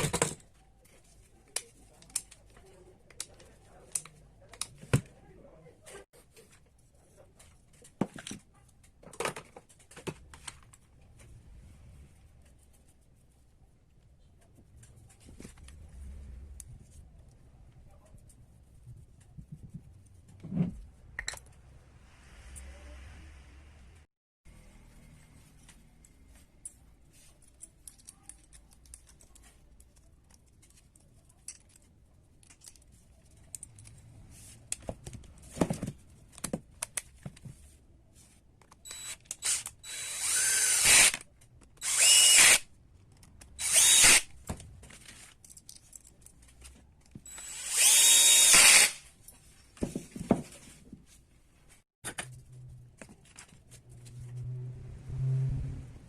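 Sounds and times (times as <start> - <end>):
clicks of parts and tools: 27.4 - 37.4, 43.0 - 49.0
power tool motor running: 38.9 - 41.2, 41.8 - 42.6, 43.6 - 44.3, 47.3 - 49.0.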